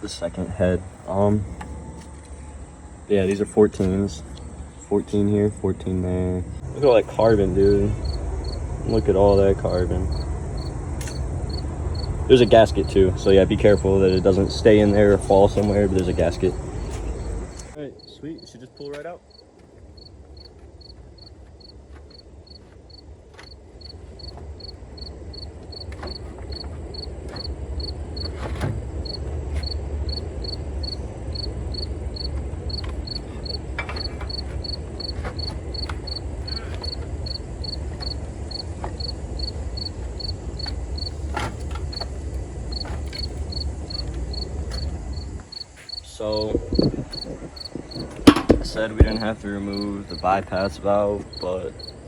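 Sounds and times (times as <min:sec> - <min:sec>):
insect chirping: 0:00.0 - 0:52.0
clicks and knocks of car part: 0:47.9 - 0:49.3.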